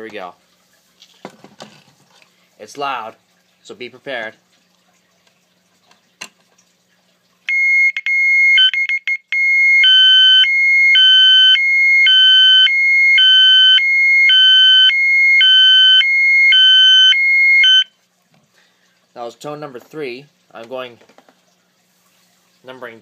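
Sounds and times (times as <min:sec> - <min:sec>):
fire alarm horn high-low tone: 0:07.5 - 0:17.9.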